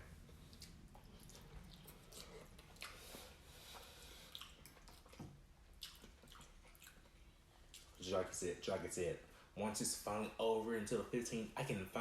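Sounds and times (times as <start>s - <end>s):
wet chewing and mouth sounds: 0.0s - 8.1s.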